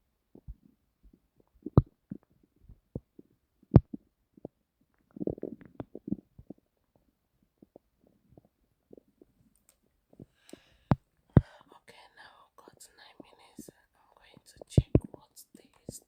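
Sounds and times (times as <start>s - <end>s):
stomach gurgling: 0.3s - 9.4s, 13.2s - 16.0s.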